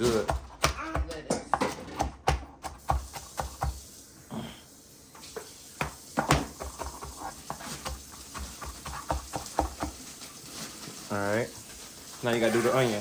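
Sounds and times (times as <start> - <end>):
cabbage being shredded by hand: 0.0 - 0.9, 6.4 - 13.0.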